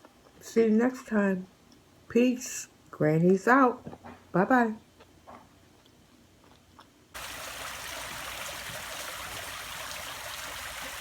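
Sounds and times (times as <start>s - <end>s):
rushing trickling water: 7.2s - 11.0s.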